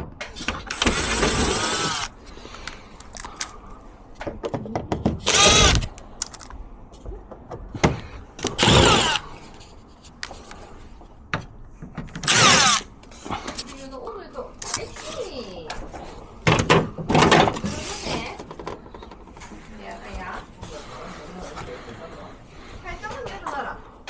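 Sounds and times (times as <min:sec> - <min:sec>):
cordless drill motor whine: 0:00.4 - 0:03.5, 0:05.2 - 0:06.5, 0:08.4 - 0:09.4, 0:12.2 - 0:13.7, 0:14.6 - 0:15.2, 0:17.5 - 0:18.4
small knocks and clicks: 0:04.2 - 0:09.2.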